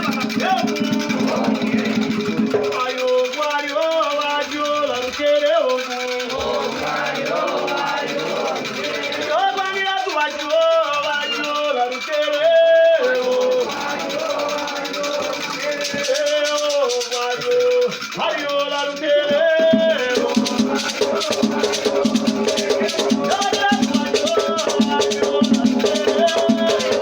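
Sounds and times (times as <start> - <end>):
steady drum beat: 0.0 - 3.4, 13.2 - 27.0
people singing a ritual chant: 0.0 - 27.0
shaken rattle: 0.0 - 27.0.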